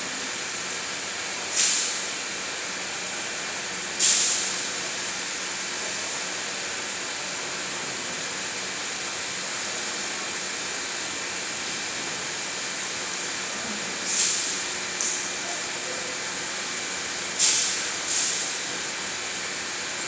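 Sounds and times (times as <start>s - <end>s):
machinery running with hiss: 0.0s - 20.0s
sharp burst of hissing: 1.5s - 2.1s, 4.0s - 4.6s, 14.0s - 14.7s, 17.4s - 18.6s.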